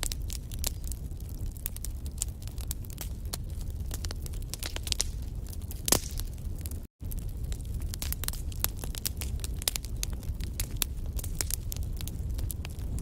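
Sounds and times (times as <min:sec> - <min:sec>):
fire crackling and popping: 0:00.0 - 0:13.0
low rumble of flames: 0:00.0 - 0:13.0.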